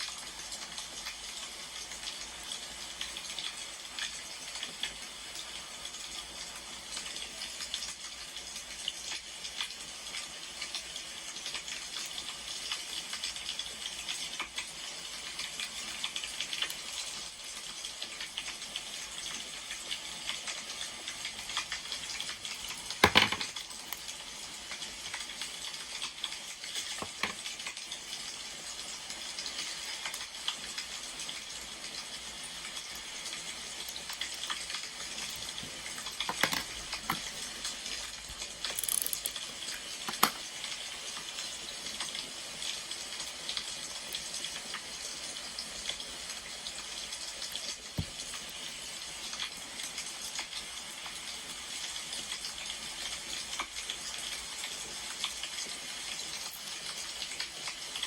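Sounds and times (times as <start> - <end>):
wood fire crackling and popping: 30.0 - 40.8.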